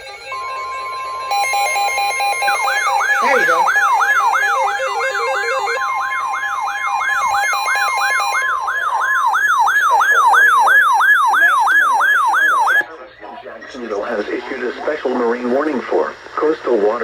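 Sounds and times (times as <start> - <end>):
steady alert tone: 1.3 - 8.9
siren-like sweeping tone: 1.3 - 12.8.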